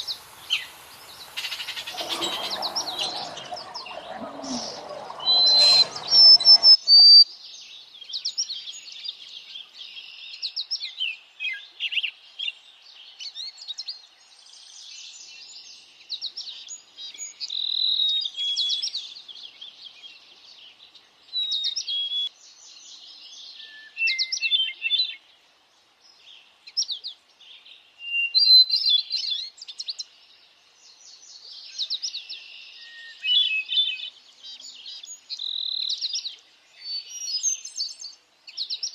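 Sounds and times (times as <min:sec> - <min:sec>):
songbirds chirping and trilling: 0:00.0 - 0:38.9
low rush of noise: 0:00.1 - 0:06.8.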